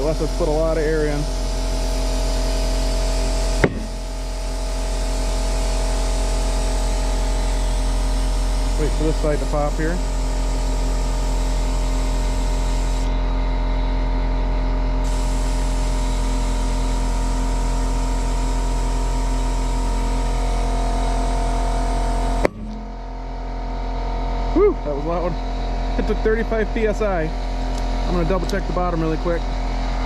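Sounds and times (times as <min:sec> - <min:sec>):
compressed air hissing into tire: 0:00.5 - 0:13.1, 0:15.0 - 0:16.4
tire bead popping onto rim: 0:03.6 - 0:04.3, 0:22.4 - 0:23.1.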